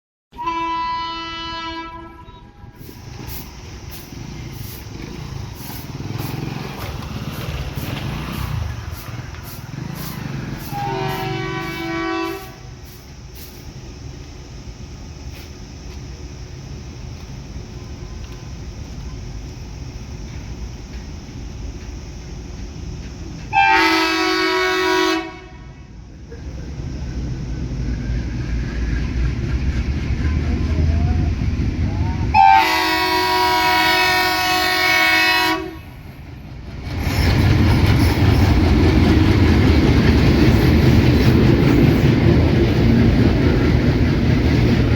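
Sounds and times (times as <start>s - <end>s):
locomotive air horn blast: 0.3s - 3.0s, 8.4s - 13.6s, 23.5s - 25.8s, 32.3s - 36.0s
diesel locomotive rumble: 0.4s - 44.9s.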